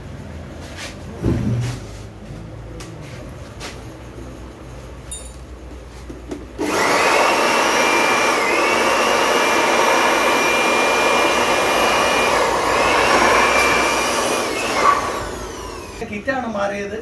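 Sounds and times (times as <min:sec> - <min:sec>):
compressed air rush: 0:08.1 - 0:16.0.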